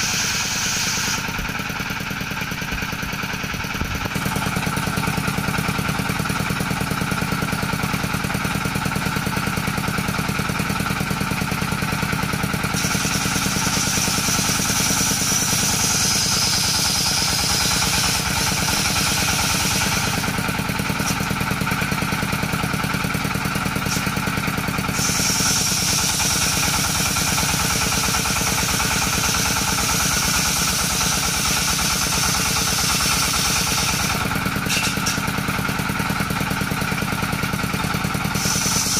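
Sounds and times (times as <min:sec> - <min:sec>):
saw blade whine ripping wood: 0:00.0 - 0:01.6, 0:12.6 - 0:21.5, 0:23.6 - 0:35.4, 0:38.3 - 0:38.9
circular saw running: 0:00.0 - 0:38.9.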